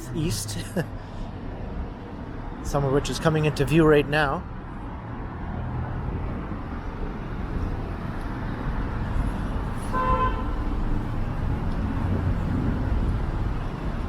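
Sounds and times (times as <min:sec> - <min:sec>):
road traffic rumble: 0:00.0 - 0:14.0
car horn toot: 0:09.9 - 0:10.6.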